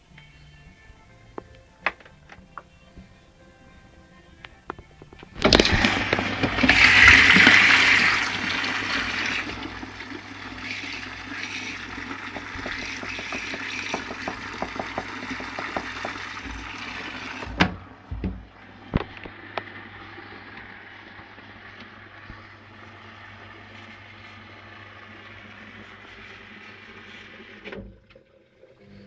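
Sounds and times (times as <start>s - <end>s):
clicks and rattles: 4.4s - 9.8s, 10.7s - 18.4s
water rushing into washing machine: 4.7s - 29.0s.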